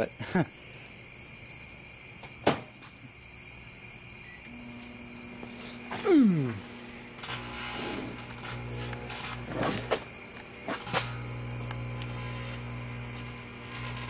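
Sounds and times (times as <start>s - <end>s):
crickets chirping: 0.0s - 14.0s
low hum: 4.5s - 14.0s.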